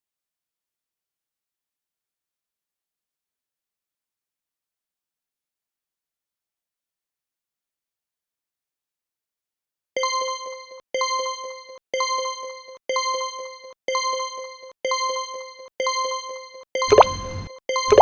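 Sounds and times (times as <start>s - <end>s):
timer ding: 16.8s - 18.0s.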